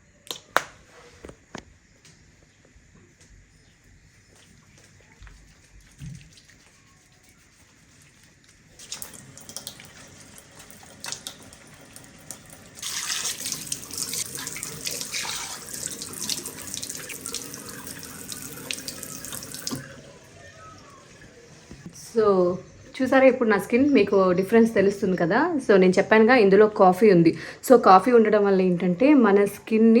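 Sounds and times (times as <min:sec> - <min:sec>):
face rinsing splashes: 0:08.8 - 0:19.9
tap water running into sink: 0:08.8 - 0:20.1.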